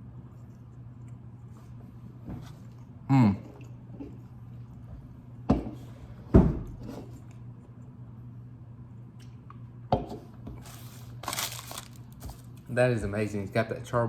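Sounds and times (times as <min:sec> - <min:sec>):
steady low hum: 0:00.0 - 0:14.0
packaging rustle: 0:10.6 - 0:12.7.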